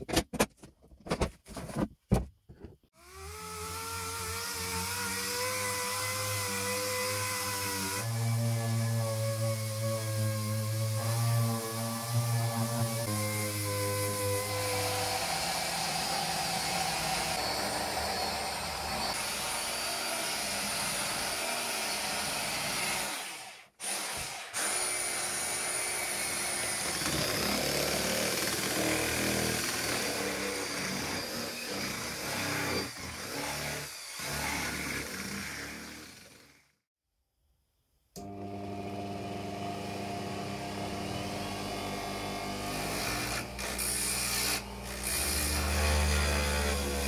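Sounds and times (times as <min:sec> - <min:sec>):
power tool running: 0:12.1 - 0:36.7.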